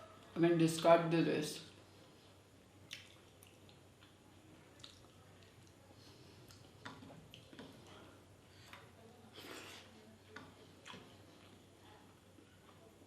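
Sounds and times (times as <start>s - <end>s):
wet chewing mouth sounds: 2.9s - 12.9s.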